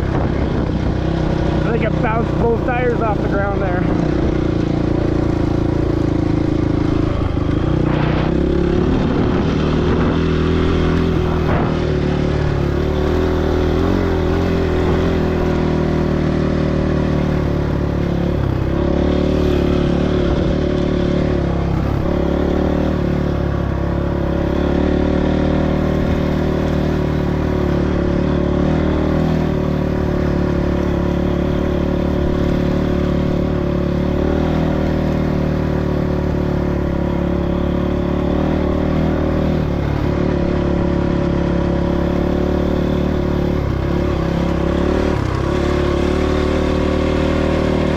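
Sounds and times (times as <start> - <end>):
small motorcycle engine running: 0.0 - 47.9.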